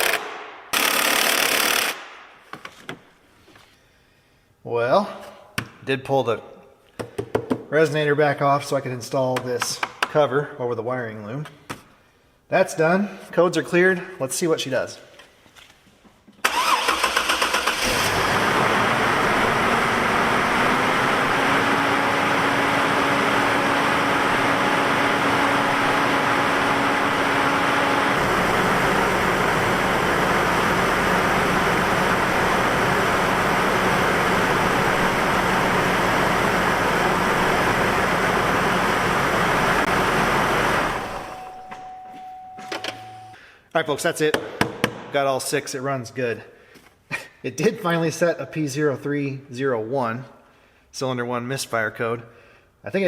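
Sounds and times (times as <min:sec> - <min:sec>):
car engine starting and idling: 0:16.4 - 0:42.0.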